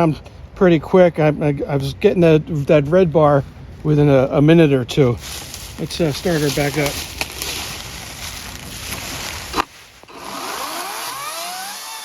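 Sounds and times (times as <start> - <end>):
chainsaw motor whining: 9.5 - 12.0.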